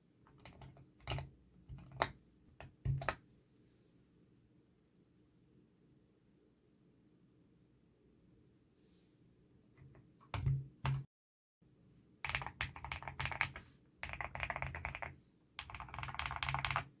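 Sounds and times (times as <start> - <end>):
mechanical keyboard typing: 0.3 - 3.2, 12.2 - 16.9.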